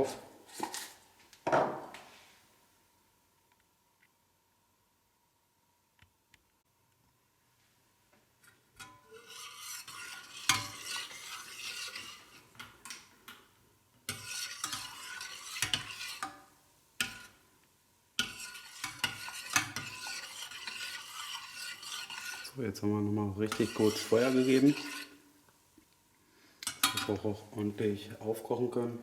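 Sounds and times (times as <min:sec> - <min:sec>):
spoon scraping and knocking a pot: 0:08.7 - 0:13.4, 0:14.0 - 0:17.4, 0:18.2 - 0:22.6, 0:23.4 - 0:25.2, 0:26.6 - 0:27.2.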